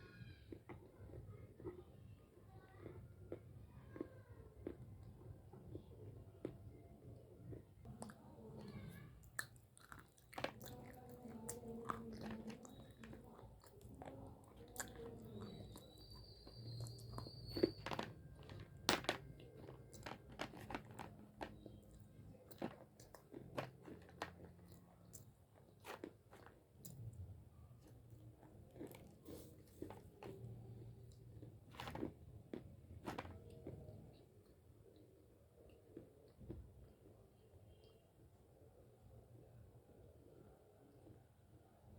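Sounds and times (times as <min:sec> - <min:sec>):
biting and chewing: 0:07.4 - 0:35.0
clay crunching between teeth: 0:07.5 - 0:27.2, 0:27.8 - 0:35.0.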